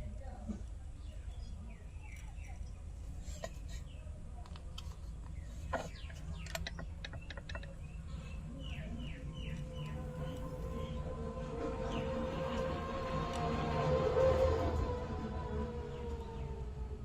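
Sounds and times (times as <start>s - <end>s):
steady low hum: 0.0s - 17.0s
bird calls: 5.3s - 11.0s.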